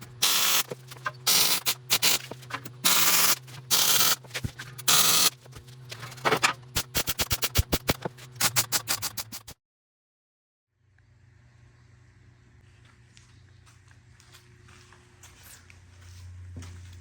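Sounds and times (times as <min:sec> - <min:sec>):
welding arc crackling: 0:00.0 - 0:05.4
welder humming: 0:00.0 - 0:05.5.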